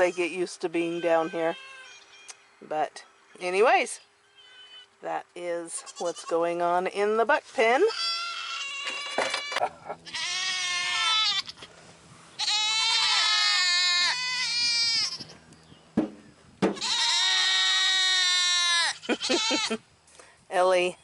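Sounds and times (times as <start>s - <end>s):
goat kids bleating: 0.0s - 2.4s, 4.2s - 5.0s, 5.7s - 6.6s, 7.9s - 11.7s, 12.4s - 15.5s, 16.8s - 19.8s.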